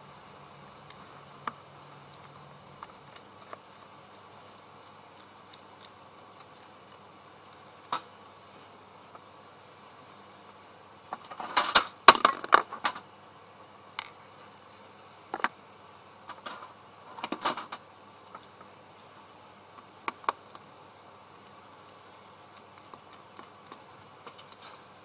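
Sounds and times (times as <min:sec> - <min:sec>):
small hard objects clattering: 0:11.1 - 0:13.0.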